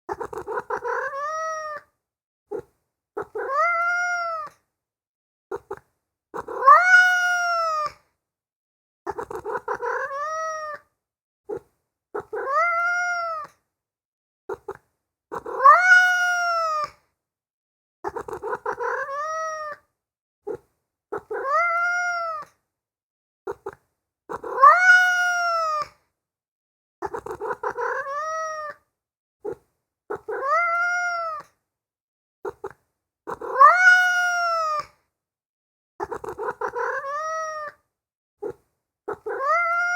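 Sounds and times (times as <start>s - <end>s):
cat meowing: 0.2s - 1.9s, 3.2s - 4.6s, 6.4s - 8.0s, 9.1s - 10.9s, 12.2s - 13.6s, 15.3s - 17.0s, 18.2s - 19.8s, 21.2s - 22.6s, 24.3s - 25.9s, 27.0s - 28.8s, 30.1s - 31.6s, 32.5s - 34.9s, 36.0s - 37.8s, 38.4s - 39.9s.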